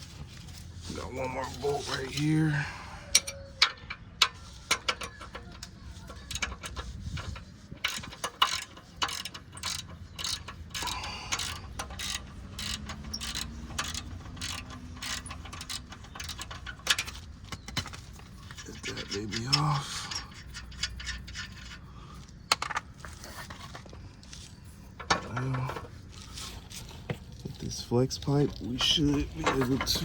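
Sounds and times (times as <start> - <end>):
ratchet wrench clicking: 3.1 - 18.0.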